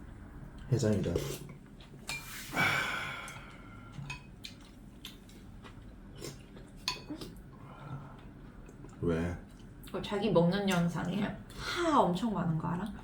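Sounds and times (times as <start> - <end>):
person exhaling ha: 2.4 - 3.7
chewing: 3.2 - 10.0.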